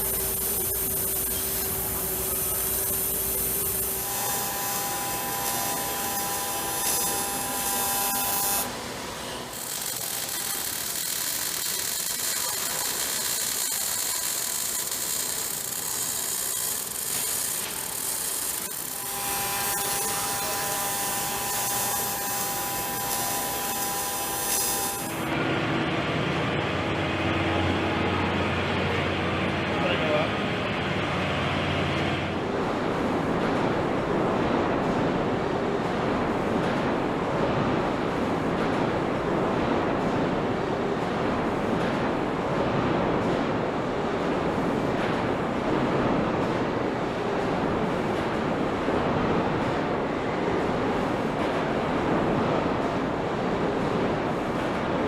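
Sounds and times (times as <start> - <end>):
power tools hissing: 0.0 - 25.3
machinery whining tones: 0.0 - 32.4.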